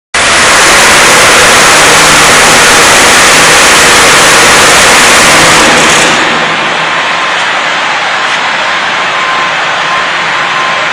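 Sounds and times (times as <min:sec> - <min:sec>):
floor milling machine grinding: 0:00.2 - 0:10.9.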